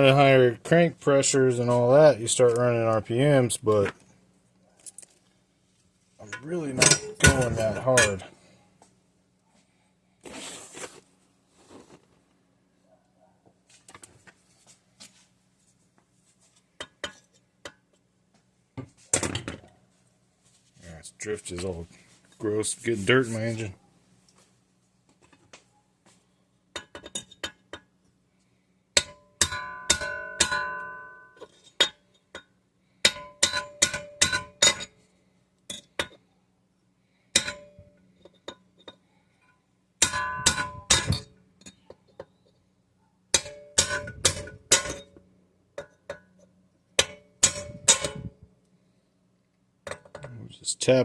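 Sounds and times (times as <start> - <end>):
hammer tapping metal drift: 29.0 - 32.0.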